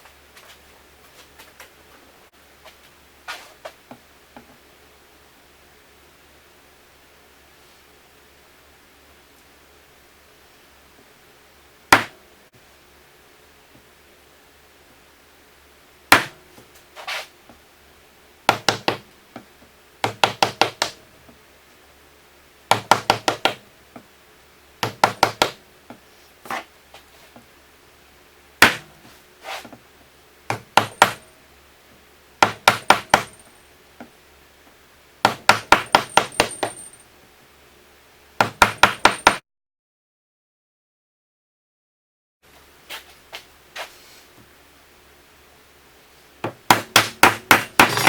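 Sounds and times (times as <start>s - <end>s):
hammer tapping on wood: 18.5s - 21.0s, 22.7s - 23.6s, 24.8s - 26.0s, 30.5s - 31.2s, 32.4s - 33.4s, 38.4s - 39.4s.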